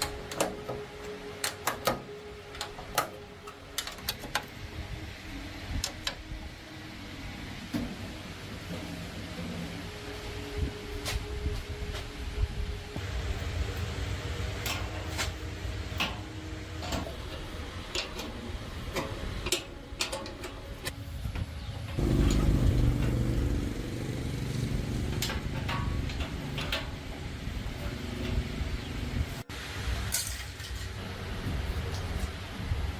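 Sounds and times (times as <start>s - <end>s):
machine motor humming: 22.0s - 29.2s.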